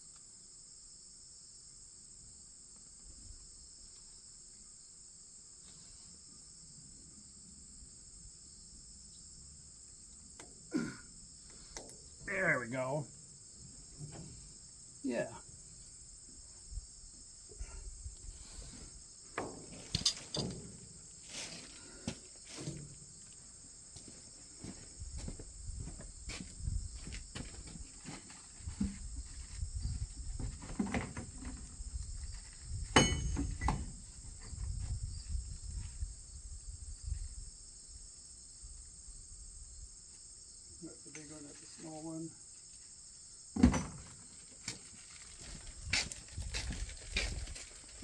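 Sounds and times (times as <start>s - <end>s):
crickets chirping: 0.0s - 48.0s
knocks and clunks of tools: 19.4s - 20.8s, 32.9s - 33.9s.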